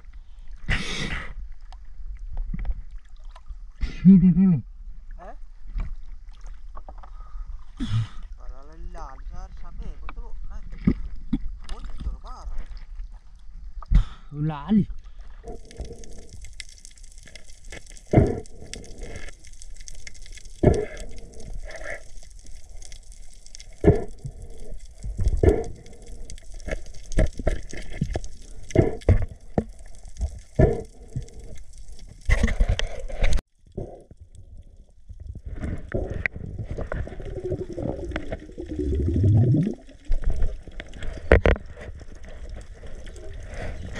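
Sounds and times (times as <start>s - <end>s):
water sloshing and gurgling: 0.0s - 3.8s, 4.8s - 43.9s
knocks and splashes: 10.7s - 12.8s.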